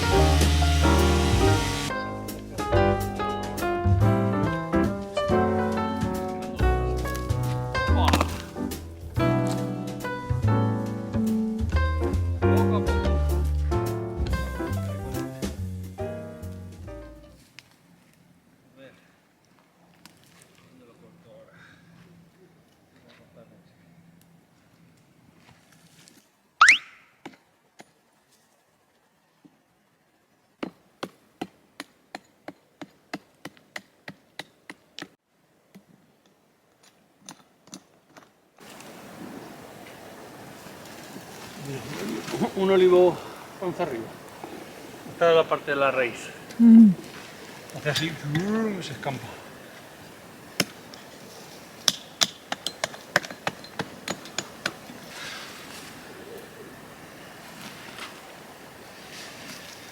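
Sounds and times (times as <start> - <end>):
hand tool striking wood: 8.0 - 8.8, 51.8 - 54.9
splitting tool striking wood: 8.1 - 8.6.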